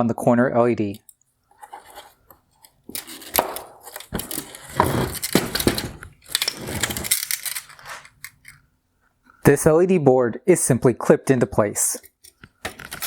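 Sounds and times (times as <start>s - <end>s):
plastic parts scraping and clicking: 1.0s - 8.6s, 12.0s - 13.0s.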